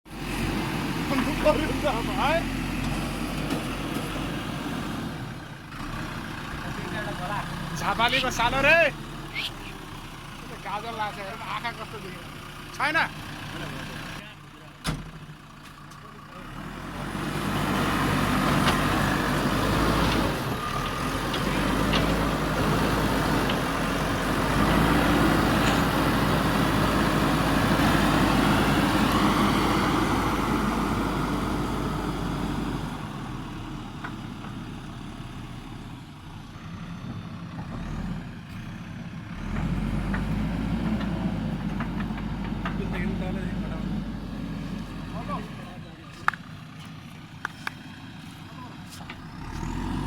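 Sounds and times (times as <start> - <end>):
diesel engine running under load: 0.1 - 50.0.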